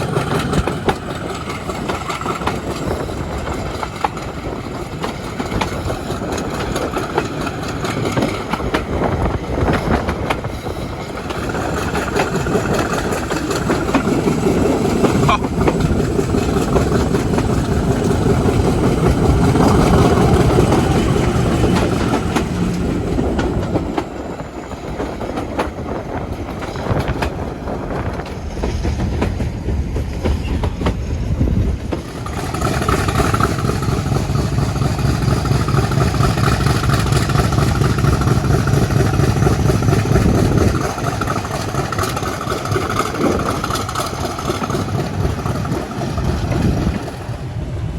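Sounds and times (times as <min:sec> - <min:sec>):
diesel locomotive engine misfiring: 0:28.0 - 0:47.6.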